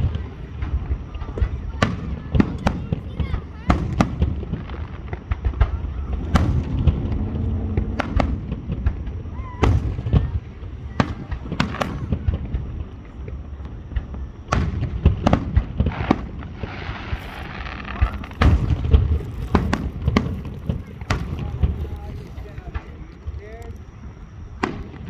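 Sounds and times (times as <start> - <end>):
fireworks bangs: 0.0 - 25.0
fireworks hissing: 0.0 - 25.0
deep rumble: 4.6 - 14.2, 15.2 - 25.0.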